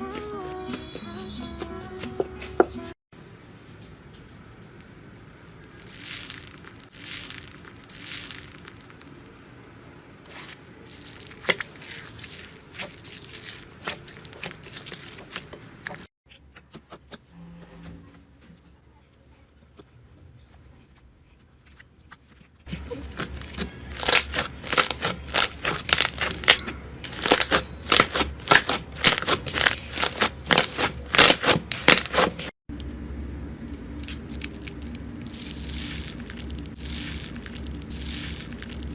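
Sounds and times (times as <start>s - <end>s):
slime crackling and popping: 5.4s - 9.4s, 10.3s - 16.0s, 22.6s - 32.5s, 34.0s - 38.9s.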